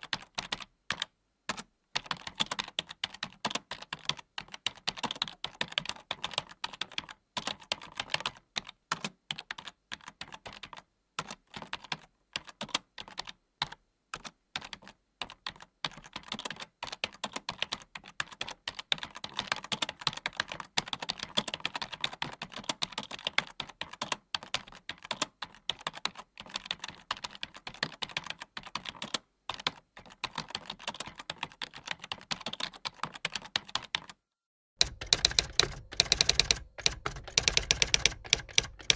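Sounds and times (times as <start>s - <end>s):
typing on a keyboard: 0.0s - 34.2s, 34.8s - 38.9s.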